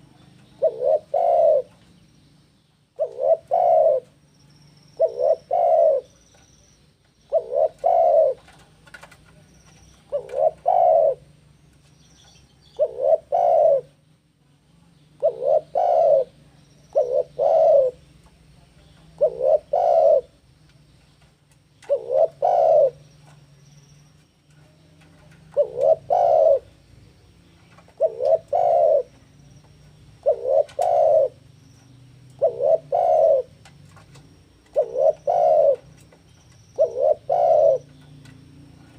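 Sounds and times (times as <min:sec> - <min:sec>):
dove cooing: 0:00.0 - 0:01.8, 0:03.0 - 0:04.2, 0:05.0 - 0:06.2, 0:07.2 - 0:11.4, 0:12.7 - 0:14.0, 0:15.2 - 0:18.1, 0:19.0 - 0:20.4, 0:21.8 - 0:23.2, 0:25.0 - 0:26.8, 0:27.6 - 0:29.3, 0:30.2 - 0:38.9.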